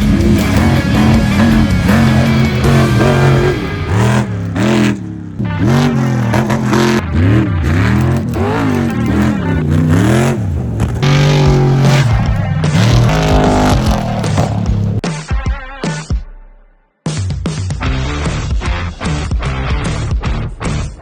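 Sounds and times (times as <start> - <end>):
race vehicle engines revving: 0.0 - 15.0
rock music: 0.0 - 16.3, 17.1 - 21.0.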